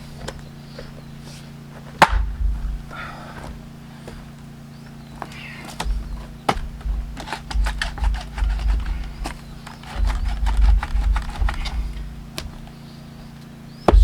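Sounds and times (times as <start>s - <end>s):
log cracking and snapping: 2.0s - 3.5s, 5.1s - 12.8s
sharp knocks: 2.0s - 4.3s, 5.2s - 12.8s
low rumble: 2.2s - 3.9s.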